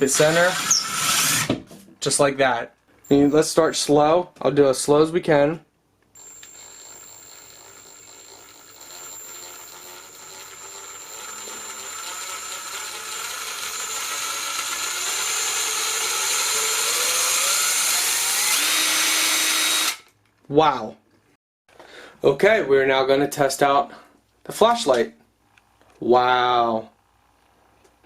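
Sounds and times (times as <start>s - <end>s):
impact driver motor whining: 6.2s - 20.0s.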